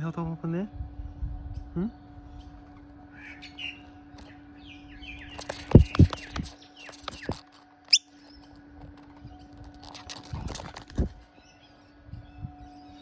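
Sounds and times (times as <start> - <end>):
noisy miner chirps: 5.1 - 8.1.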